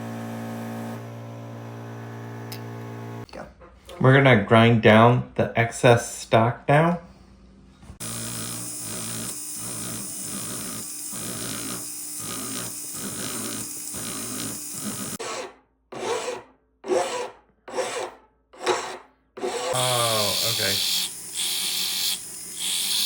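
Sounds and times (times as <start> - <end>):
motor hum: 0.0 - 3.3, 8.0 - 15.2, 19.5 - 23.0
abrasive grinding on metal: 8.0 - 15.3.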